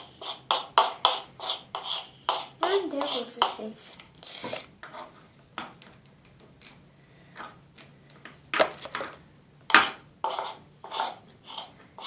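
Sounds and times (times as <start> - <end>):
spoon scraping bowl: 0.0 - 3.8, 8.8 - 12.0.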